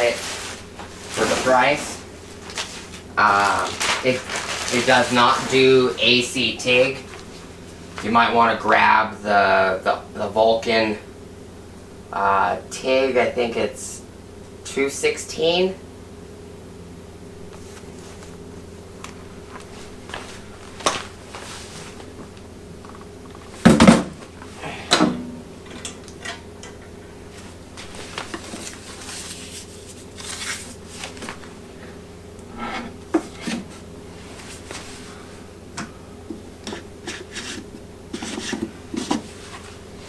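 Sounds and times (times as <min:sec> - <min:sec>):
items being handled and set down: 0:00.0 - 0:08.1, 0:19.2 - 0:31.6, 0:32.7 - 0:40.0
steady low hum: 0:00.0 - 0:40.0.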